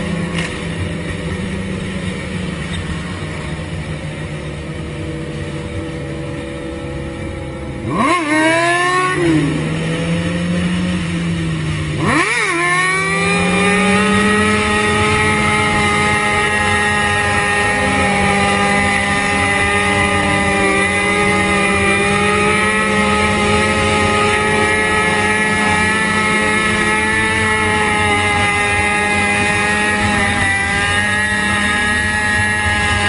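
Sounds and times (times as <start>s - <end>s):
motorcycle engine at high revs: 0.0s - 33.0s.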